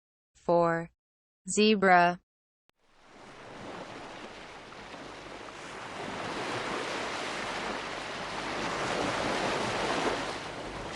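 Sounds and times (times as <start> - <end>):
water rushing: 2.8 - 10.9.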